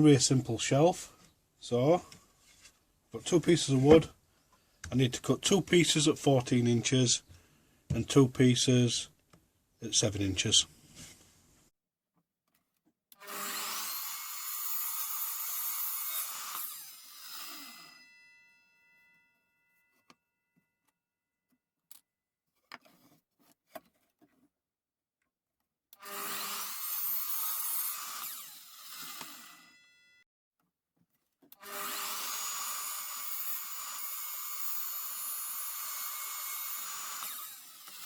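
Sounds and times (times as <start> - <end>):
electric saw cutting wood: 13.2 - 18.2, 26.0 - 30.1, 31.6 - 38.0.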